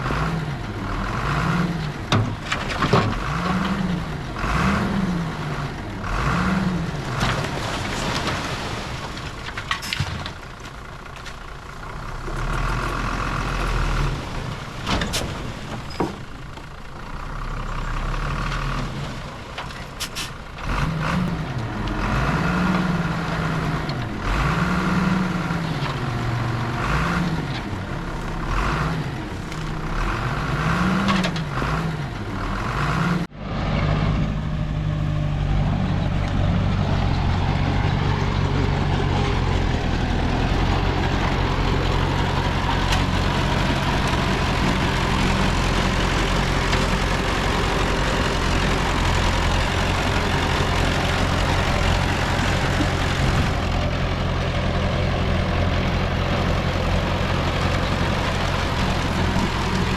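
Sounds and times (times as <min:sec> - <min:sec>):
heavy diesel engines working: 0:00.0 - 0:59.9
metal clanks: 0:19.6 - 0:21.4.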